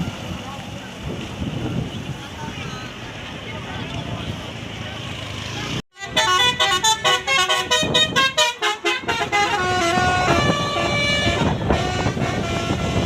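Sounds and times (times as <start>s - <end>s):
multi-tone bus horn tune: 6.0s - 13.0s.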